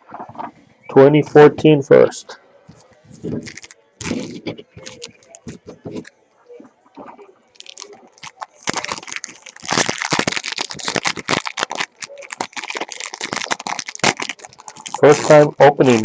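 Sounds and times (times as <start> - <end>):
foil wrappers crinkling and tearing: 3.2 - 6.1, 7.5 - 16.0.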